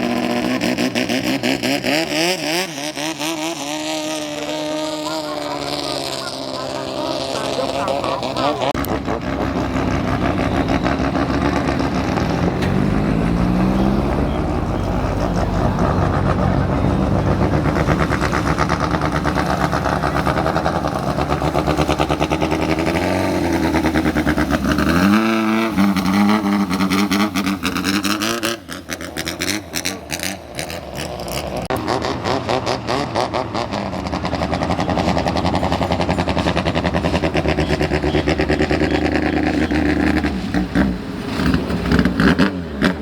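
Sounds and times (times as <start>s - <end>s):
speedboat engine at high revs: 0.0s - 43.0s.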